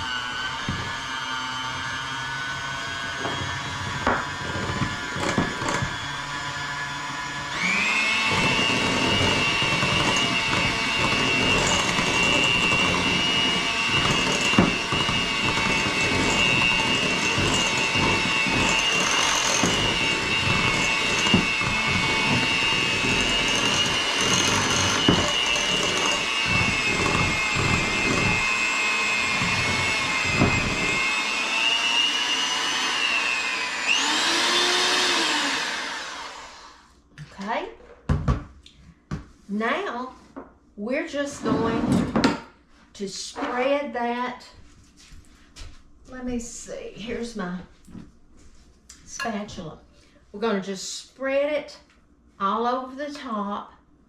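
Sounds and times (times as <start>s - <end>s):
electric mixer motor whine: 0.0s - 37.0s.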